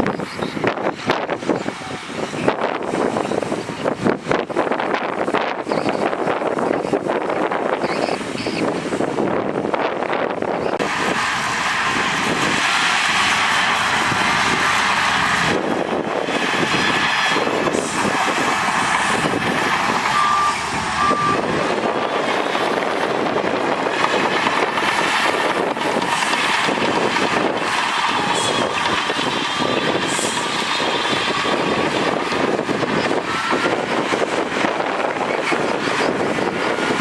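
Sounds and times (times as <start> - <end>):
heavy machinery running: 8.2 - 37.0
reversing alarm beeping: 16.8 - 23.2, 27.8 - 34.4.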